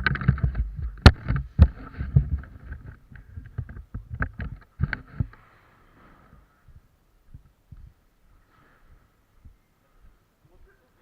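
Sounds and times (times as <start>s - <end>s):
knocks and rustling: 0.0s - 8.0s.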